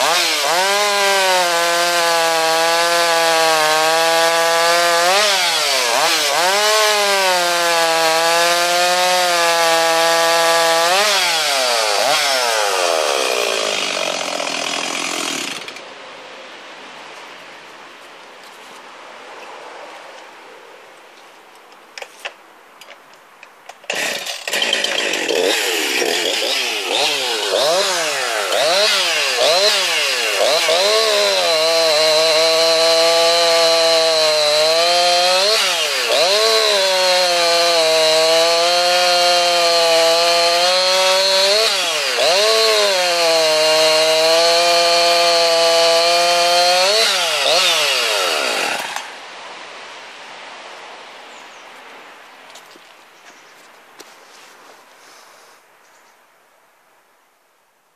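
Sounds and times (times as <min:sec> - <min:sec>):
two-stroke chainsaw revving: 0:00.0 - 0:15.8, 0:23.9 - 0:49.1.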